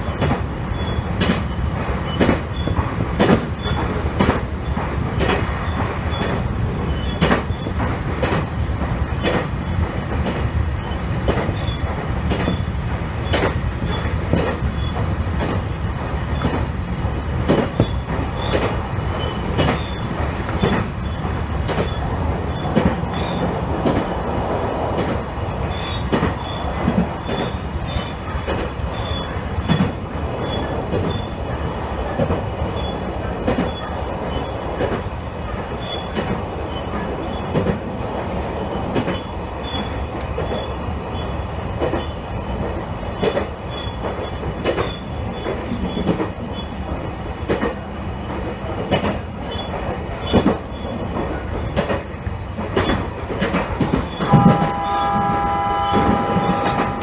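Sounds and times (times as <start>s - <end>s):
train rumbling on track: 0.0s - 57.0s
wheels clicking on rails: 0.1s - 57.0s.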